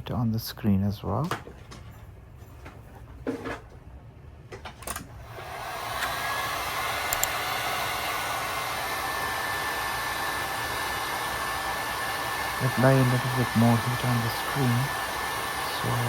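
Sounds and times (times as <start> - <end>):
hot-air blower running: 5.1 - 16.0
handling clicks: 7.1 - 7.4.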